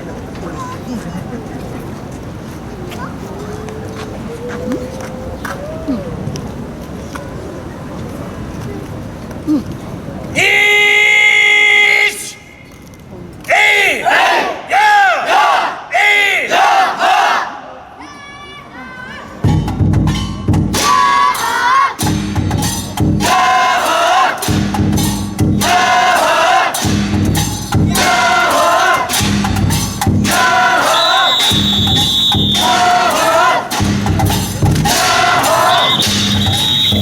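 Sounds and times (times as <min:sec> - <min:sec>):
voices chanting in unison: 0:13.5 - 0:17.8, 0:20.8 - 0:22.1, 0:23.2 - 0:24.8, 0:25.6 - 0:37.0
drum and percussion strikes: 0:19.4 - 0:37.0
high whistle-like tone: 0:30.8 - 0:32.8, 0:35.4 - 0:37.0.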